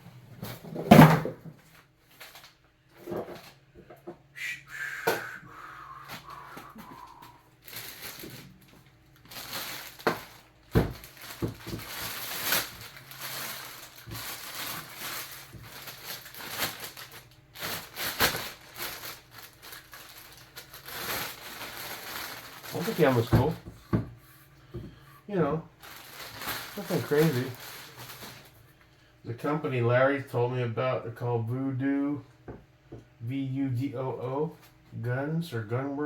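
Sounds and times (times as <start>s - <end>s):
packaging crinkling and rustling: 1.6s - 3.7s, 6.7s - 23.6s, 25.8s - 28.6s.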